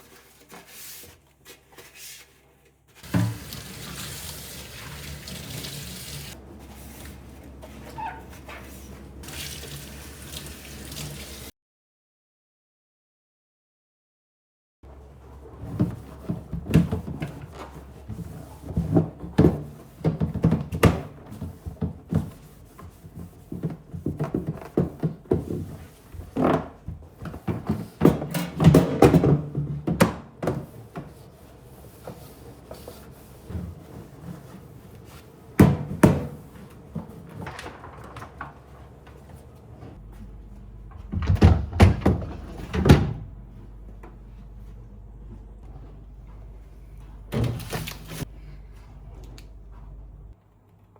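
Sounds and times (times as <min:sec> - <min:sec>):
objects knocking and thudding: 0:15.6 - 0:31.2, 0:35.6 - 0:39.2, 0:39.8 - 0:44.6.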